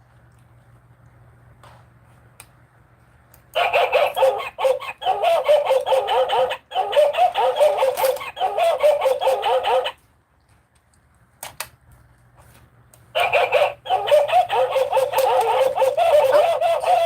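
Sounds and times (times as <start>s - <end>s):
electronic toy animal calls: 3.6s - 10.0s, 13.2s - 17.0s.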